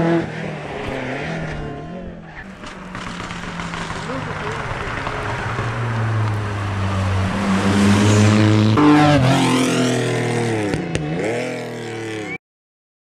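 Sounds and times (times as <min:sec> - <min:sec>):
rally car engine at high revs: 0:00.0 - 0:12.4.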